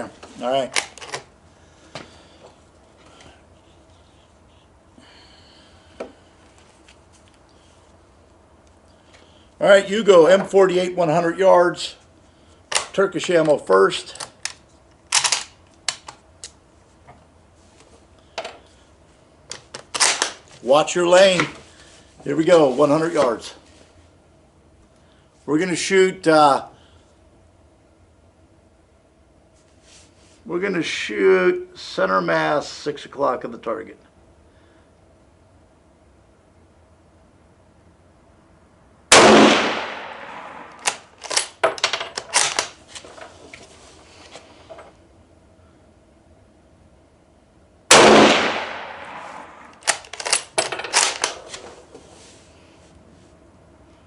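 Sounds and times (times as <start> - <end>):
rifle bolt clicks and clacks: 14.2 - 16.6, 40.7 - 42.7, 49.7 - 51.6
rifle shot with echo: 39.1 - 40.7, 47.9 - 49.7
rifle bolt metallic clicks: 49.7 - 51.4.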